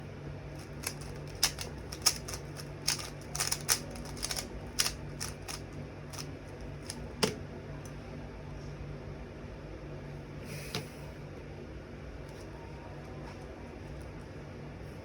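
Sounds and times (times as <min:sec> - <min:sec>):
low steady hum: 0:00.0 - 0:15.0
plastic cube clicking and clacking: 0:00.6 - 0:07.0.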